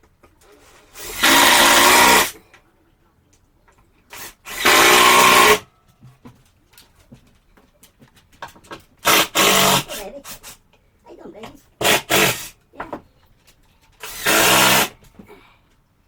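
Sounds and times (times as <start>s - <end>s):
power drill driving screws: 0.4s - 2.4s, 4.1s - 5.6s, 9.0s - 10.6s, 11.8s - 12.6s, 14.0s - 15.0s.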